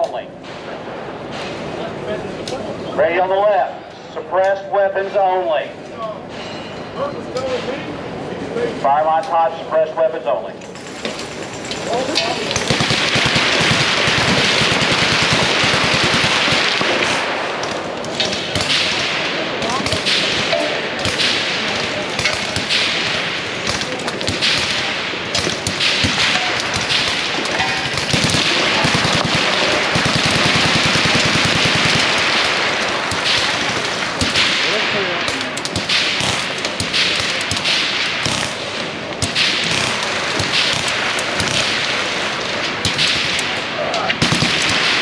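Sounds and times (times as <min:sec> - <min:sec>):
automatic gunfire burst: 0:10.9 - 0:43.6, 0:44.2 - 0:45.0
suppressed gunshots: 0:12.4 - 0:45.0.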